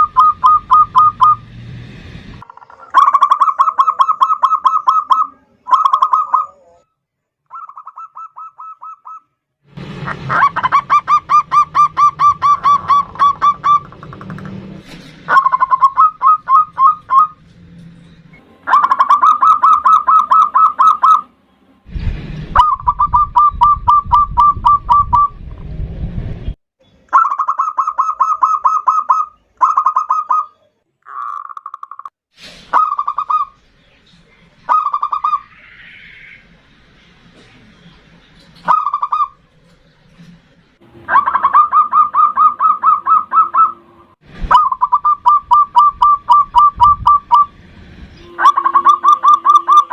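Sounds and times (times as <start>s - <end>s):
dove cooing: 2.7s - 6.8s, 10.3s - 14.3s, 15.3s - 17.4s, 41.1s - 43.8s
low rumble: 21.9s - 26.6s.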